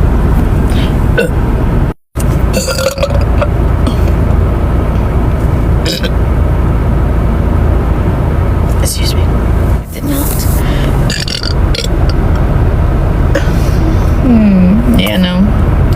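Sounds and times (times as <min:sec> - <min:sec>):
steady low rumble: 0:00.0 - 0:15.9
person burping: 0:01.2 - 0:01.4, 0:02.6 - 0:04.1, 0:05.8 - 0:06.1, 0:11.1 - 0:11.9.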